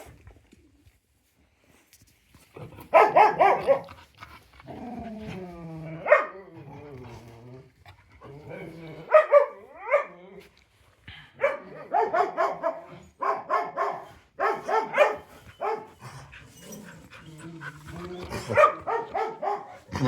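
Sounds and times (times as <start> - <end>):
dogs barking and yipping: 2.9 - 4.0, 6.0 - 6.4, 9.0 - 10.1, 11.4 - 20.0.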